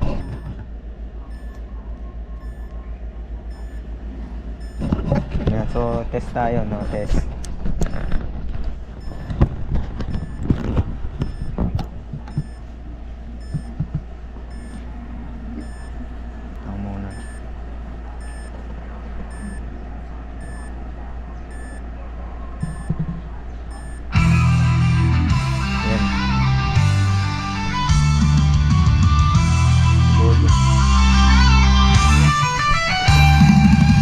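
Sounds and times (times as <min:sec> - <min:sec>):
low electrical hum: 0:00.0 - 0:34.0
short electronic beeps: 0:00.2 - 0:00.6, 0:01.3 - 0:01.6, 0:02.4 - 0:02.7, 0:03.5 - 0:03.9, 0:04.6 - 0:04.9, 0:06.8 - 0:07.1, 0:07.9 - 0:08.2, 0:09.0 - 0:09.4, 0:10.1 - 0:10.5, 0:11.2 - 0:11.6, 0:12.3 - 0:12.6, 0:13.4 - 0:13.8, 0:14.5 - 0:14.8, 0:15.6 - 0:16.0, 0:17.1 - 0:17.4, 0:18.2 - 0:18.5, 0:19.3 - 0:19.6, 0:20.4 - 0:20.7, 0:21.5 - 0:21.8, 0:22.6 - 0:23.0, 0:23.7 - 0:24.1
rock music with electric guitar: 0:24.1 - 0:34.0.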